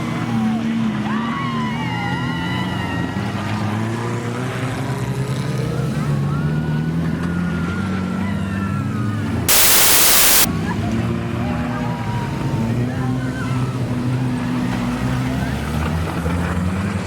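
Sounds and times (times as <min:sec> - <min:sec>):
loud hiss: 0:09.5 - 0:10.5.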